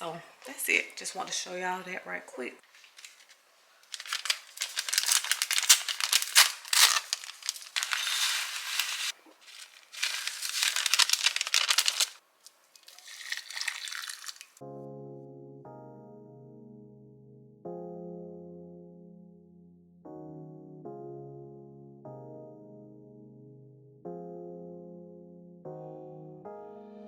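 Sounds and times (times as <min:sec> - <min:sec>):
plastic bags crinkling: 0:02.6 - 0:14.6
soft keyboard music: 0:14.6 - 0:27.0.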